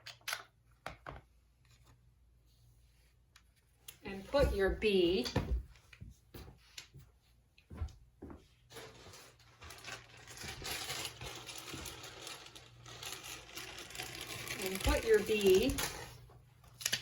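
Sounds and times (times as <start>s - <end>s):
paper rubbing and rustling: 8.7s - 16.3s.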